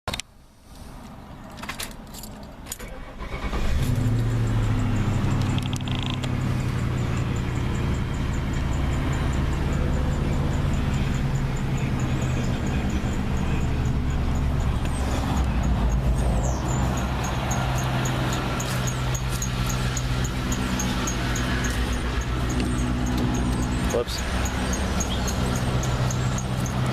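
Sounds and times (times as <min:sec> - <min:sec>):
keys jangling: 0:01.5 - 0:02.9
car engine idling: 0:03.0 - 0:26.9
clicks: 0:05.3 - 0:06.4.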